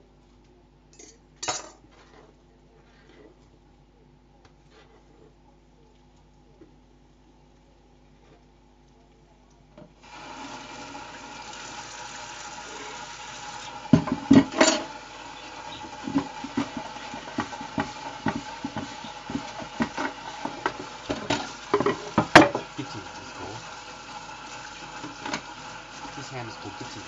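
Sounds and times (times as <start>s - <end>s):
water running: 10.0s - 27.0s.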